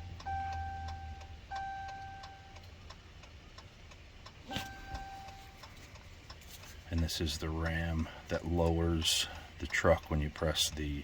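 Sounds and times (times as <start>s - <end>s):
hazard light flasher ticking: 0.0s - 7.8s
electronic beep: 4.5s - 5.5s.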